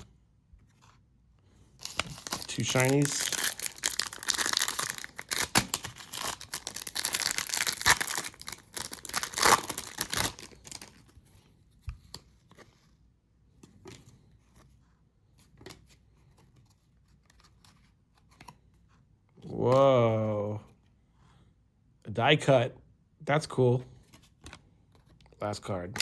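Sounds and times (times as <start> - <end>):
wrapper tearing and crinkling: 1.8 - 11.0
soft clicks of cards handled: 11.0 - 19.6.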